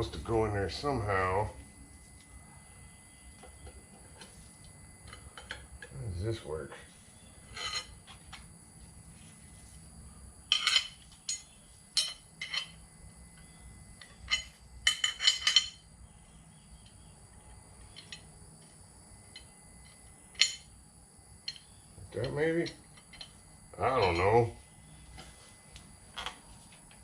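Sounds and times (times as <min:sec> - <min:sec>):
metal tools clinking: 0:07.5 - 0:08.0, 0:10.5 - 0:12.8, 0:14.1 - 0:15.8, 0:21.5 - 0:24.5.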